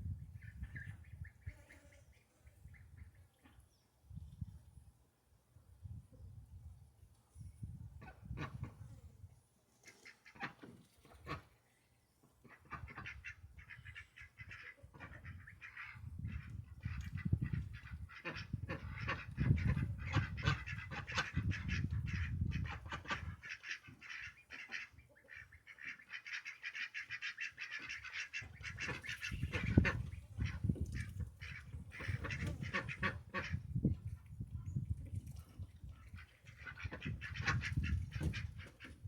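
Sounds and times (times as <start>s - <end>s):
waterfowl quacking and honking: 12.5s - 33.8s, 35.9s - 39.0s.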